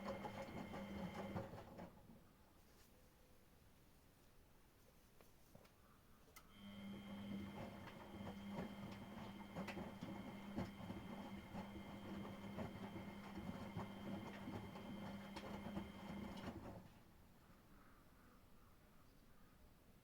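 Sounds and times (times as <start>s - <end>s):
washing machine motor hum: 0.0s - 2.1s, 6.5s - 17.0s.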